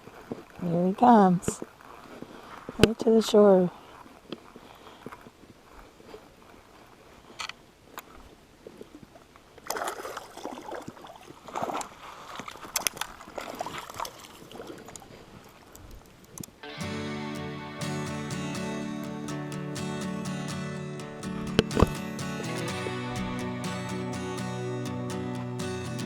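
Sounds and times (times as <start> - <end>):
acoustic guitar music: 16.6 - 26.0.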